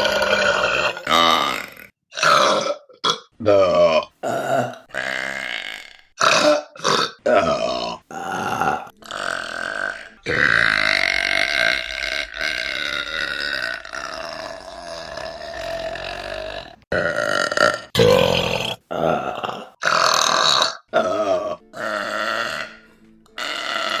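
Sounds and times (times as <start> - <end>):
women burping loudly: 0.0 - 24.0.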